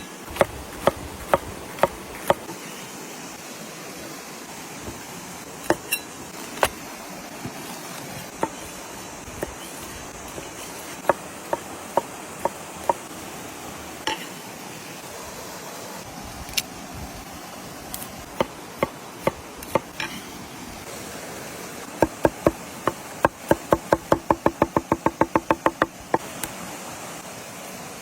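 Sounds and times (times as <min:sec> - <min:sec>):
knife chopping on cutting board: 0:00.3 - 0:02.5, 0:08.3 - 0:08.7, 0:09.4 - 0:13.1, 0:18.4 - 0:20.2, 0:22.0 - 0:26.3.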